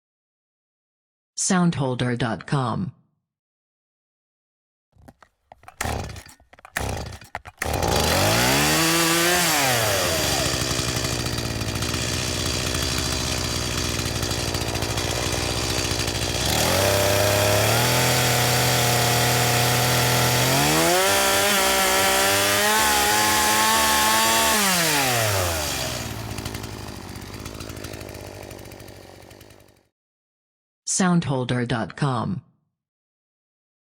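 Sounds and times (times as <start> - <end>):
starter cord yanks: 5.0 - 9.5
chainsaw engine revving: 5.0 - 29.8
chainsaw cutting wood: 5.0 - 29.9.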